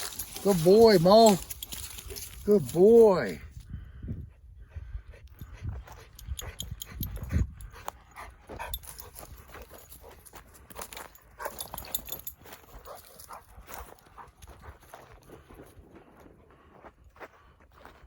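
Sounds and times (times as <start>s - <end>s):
dogs scuffing and clicking: 0.0s - 3.4s, 8.6s - 14.9s.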